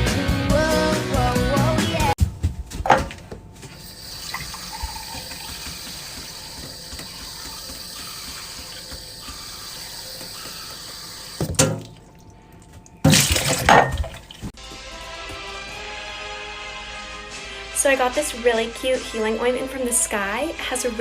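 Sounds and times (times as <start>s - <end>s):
running water: 3.8s - 14.5s.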